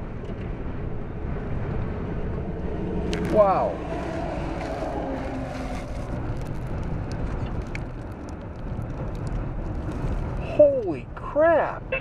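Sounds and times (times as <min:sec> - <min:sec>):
wind buffeting a vehicle: 0:00.0 - 0:12.0.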